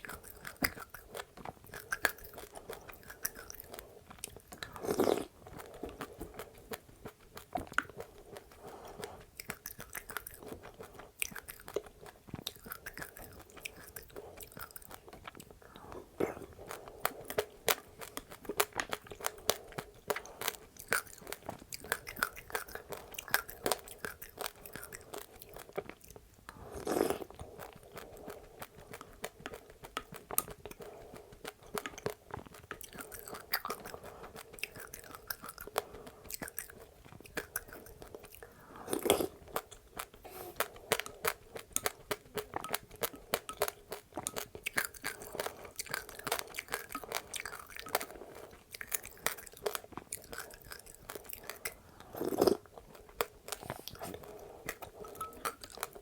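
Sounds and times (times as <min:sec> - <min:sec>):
chewing crunchy seeds: 0:00.0 - 0:56.0.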